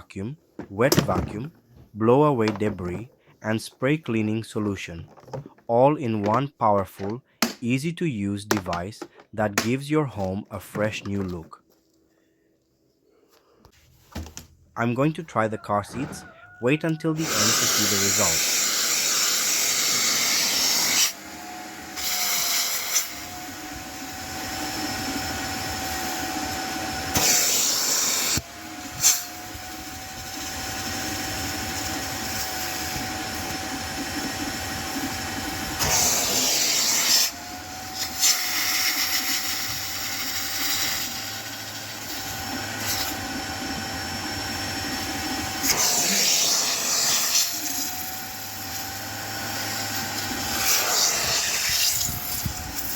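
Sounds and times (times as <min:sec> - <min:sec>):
wet dry vacuum cleaner running: 0:17.2 - 0:52.9.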